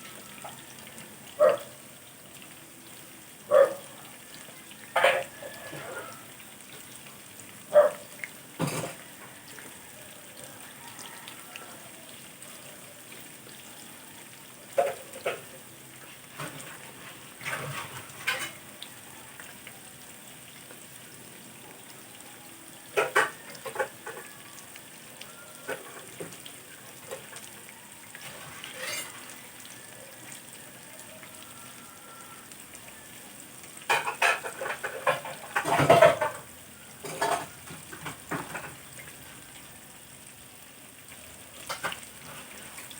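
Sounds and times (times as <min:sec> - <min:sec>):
food sizzling in a pan: 0:00.0 - 0:42.9
dishes and utensils clinking: 0:05.0 - 0:06.1, 0:08.6 - 0:09.0, 0:14.8 - 0:15.4, 0:17.4 - 0:18.7, 0:23.0 - 0:24.3, 0:28.2 - 0:29.3, 0:33.9 - 0:38.8.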